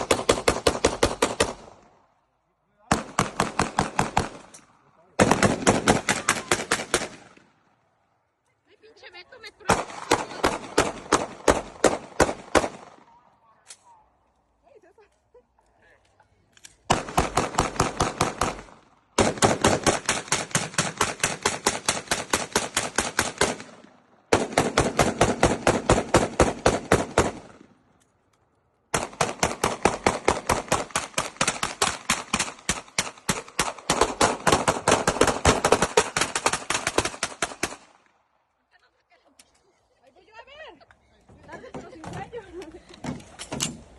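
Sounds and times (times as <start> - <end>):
rapid gunfire: 0.0 - 1.7, 2.9 - 4.4, 5.2 - 7.4, 9.6 - 13.0, 16.9 - 27.5, 28.9 - 37.9.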